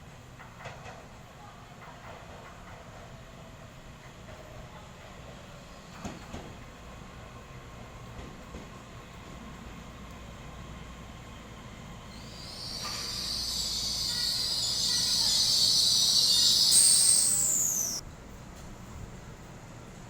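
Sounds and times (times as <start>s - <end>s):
electric train passing: 12.1s - 18.0s
high falling whine: 12.2s - 18.0s.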